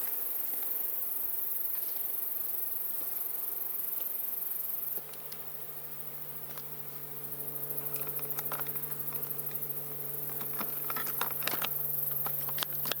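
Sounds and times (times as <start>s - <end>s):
honey bees humming: 5.2s - 13.0s.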